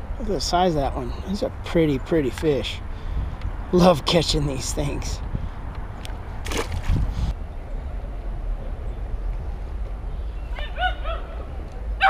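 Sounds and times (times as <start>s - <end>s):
dog yipping: 10.6s - 11.3s.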